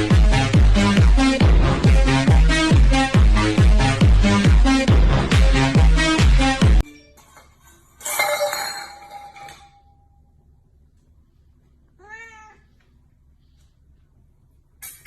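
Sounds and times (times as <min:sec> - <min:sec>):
clattering with ringing tone: 0:06.8 - 0:10.2
cat meow: 0:12.0 - 0:12.7.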